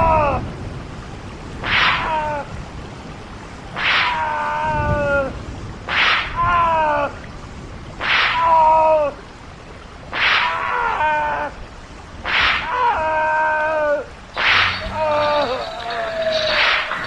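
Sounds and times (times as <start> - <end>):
whip cracking: 1.6 - 2.1, 3.8 - 4.2, 5.9 - 6.4, 8.0 - 8.6, 10.1 - 10.6, 12.2 - 12.8, 14.4 - 15.6, 16.4 - 17.0
short pitched cry: 14.4 - 17.0.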